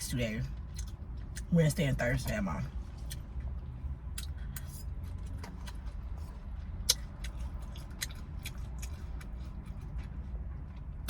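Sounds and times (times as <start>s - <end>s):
low rumble inside a car: 0.0s - 11.0s
person eating: 6.8s - 10.0s.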